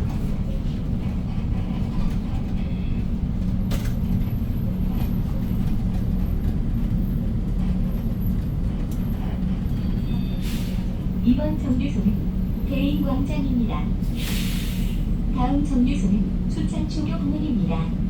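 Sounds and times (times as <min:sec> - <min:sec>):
bus engine and road drone: 0:00.0 - 0:18.0.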